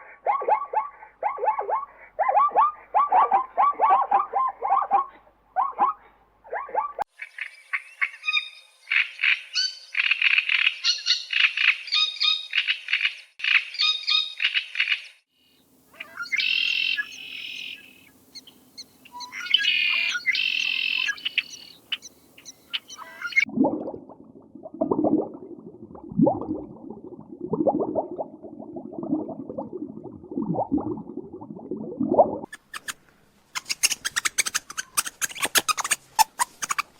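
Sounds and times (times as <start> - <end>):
birds chirping: 15.5 - 23.5
rapid low animal calls: 15.9 - 23.5.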